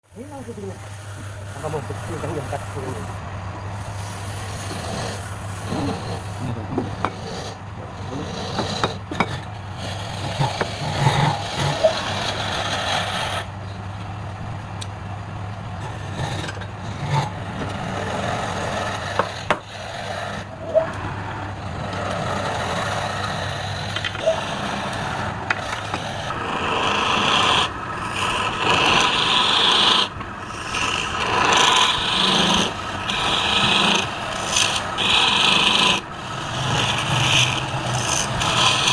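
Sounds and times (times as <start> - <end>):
tool scraping spinning wood: 0.0 - 13.8, 15.5 - 38.9
lathe motor hum: 0.0 - 38.9.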